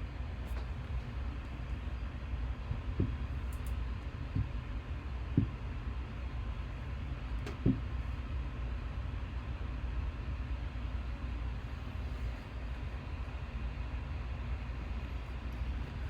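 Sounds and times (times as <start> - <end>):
low room hum and rumble: 0.0 - 16.0
soft thump: 7.5 - 7.9.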